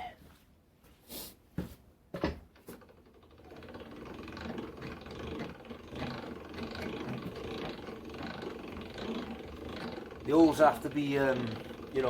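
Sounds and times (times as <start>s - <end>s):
pillar drill motor hum: 2.6s - 12.0s.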